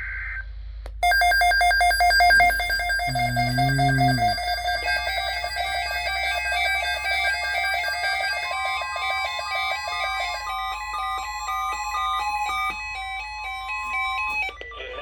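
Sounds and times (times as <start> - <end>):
held synth note: 1.0 - 14.4
fast synth melody: 1.0 - 14.5.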